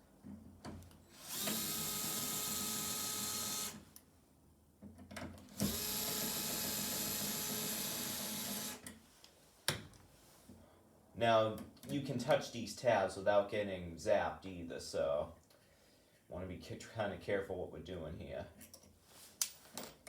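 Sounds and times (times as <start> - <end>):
cordless drill motor running: 1.1 - 3.8, 5.5 - 8.8.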